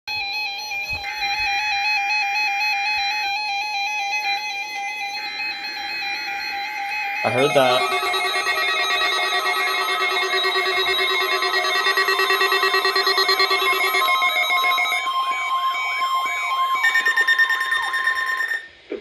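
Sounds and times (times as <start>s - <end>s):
piercing warning alarm tone: 0.2s - 18.8s
steady electronic tones: 5.0s - 18.8s
warbling siren-like sweeps: 5.1s - 18.7s.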